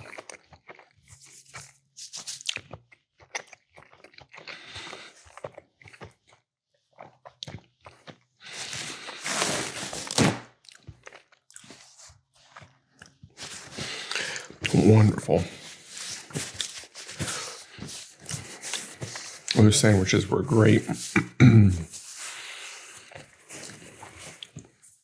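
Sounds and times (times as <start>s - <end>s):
wet mouth sounds: 0.0s - 6.2s, 11.5s - 19.6s
person chewing food: 0.0s - 19.6s, 20.9s - 25.0s.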